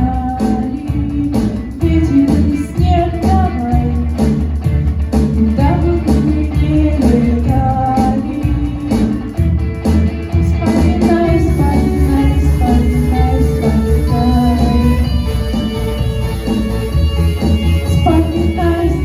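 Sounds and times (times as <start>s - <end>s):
guitar over a steady beat: 0.0s - 19.0s.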